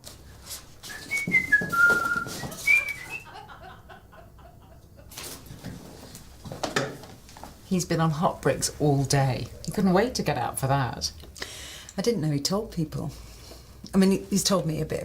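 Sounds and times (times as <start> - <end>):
person whistling a tune: 0.9 - 3.3.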